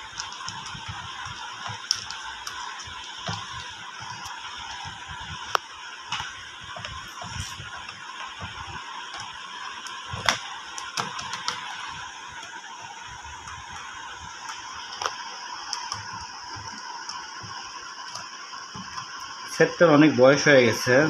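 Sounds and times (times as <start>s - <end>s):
steady hiss: 0.0s - 21.0s.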